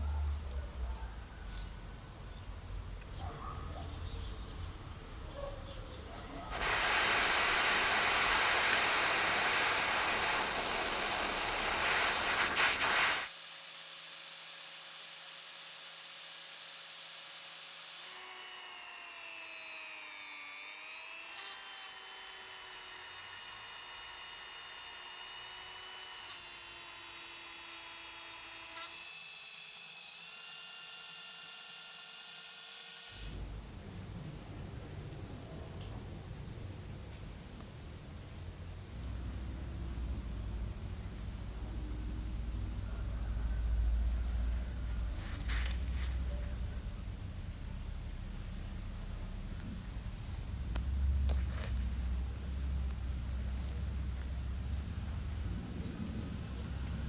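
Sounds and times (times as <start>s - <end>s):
sliding steady tones: 6.5s - 13.3s
power drill whirring: 6.5s - 33.4s.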